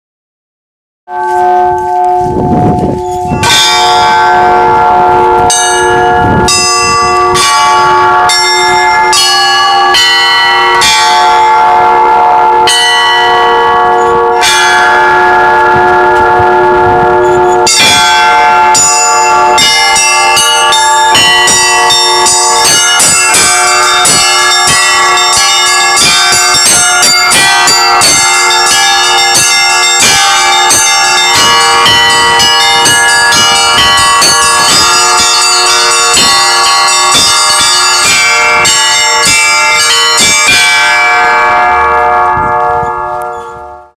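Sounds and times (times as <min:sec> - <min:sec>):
church bells ringing: 0:01.1 - 0:43.9
hum of deep bells: 0:01.1 - 0:43.9.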